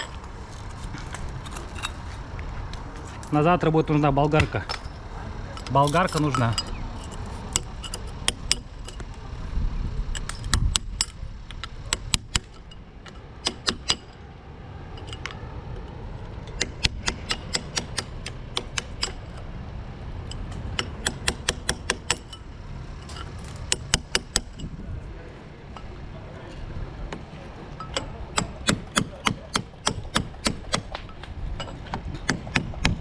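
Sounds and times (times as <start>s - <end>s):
sharp metallic clicks and taps: 5.6s - 9.1s, 16.5s - 19.5s, 20.3s - 22.4s
low rumble: 21.9s - 28.4s.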